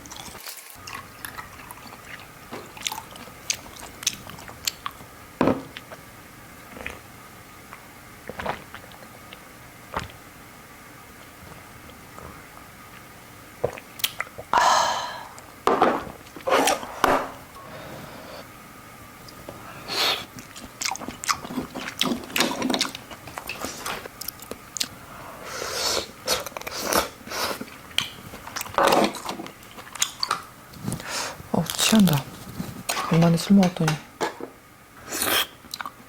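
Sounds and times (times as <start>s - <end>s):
person chewing and slurping: 0.0s - 5.0s, 19.3s - 31.4s, 35.0s - 36.0s.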